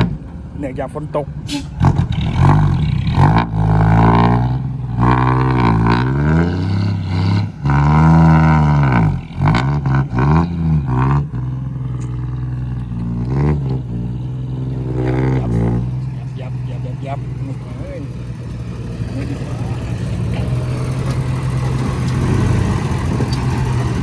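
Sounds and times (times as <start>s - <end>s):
truck engine revving: 0.0s - 24.0s
wheels spinning on wet ground: 7.2s - 24.0s.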